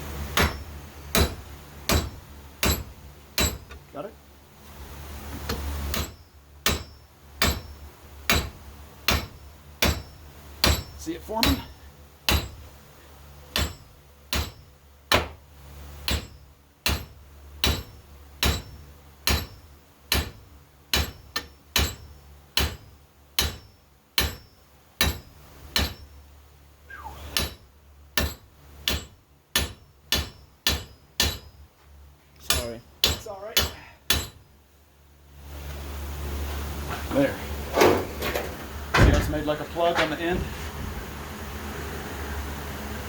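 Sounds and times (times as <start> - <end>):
hammer striking metal rivet: 0.4 - 3.8, 5.9 - 11.7, 12.3 - 12.6, 13.5 - 15.4, 16.0 - 26.2, 27.3 - 31.6, 32.4 - 34.5.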